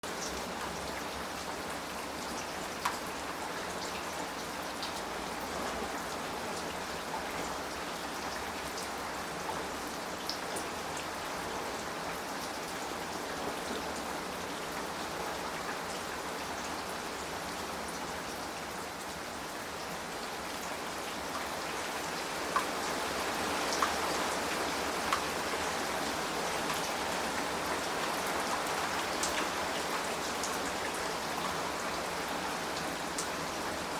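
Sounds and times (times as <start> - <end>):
rain on a tile roof: 0.0 - 33.9
sharp drips and taps: 2.8 - 3.1, 22.5 - 22.8, 23.7 - 24.0, 25.1 - 25.3.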